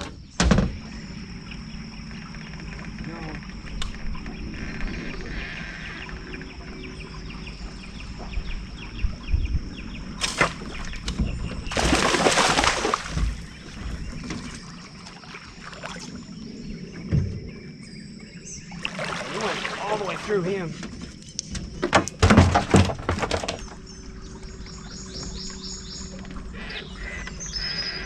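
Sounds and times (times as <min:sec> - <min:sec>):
fish thrashing in water: 0:11.6 - 0:13.8, 0:18.8 - 0:20.5
dull knocks against boat: 0:17.1 - 0:17.6, 0:20.8 - 0:23.8.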